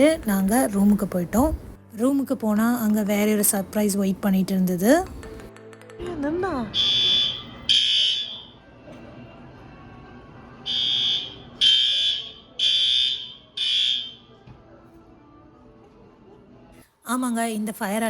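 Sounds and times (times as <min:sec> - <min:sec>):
fire alarm high-pitched beeps: 0:06.8 - 0:08.6, 0:10.7 - 0:14.3.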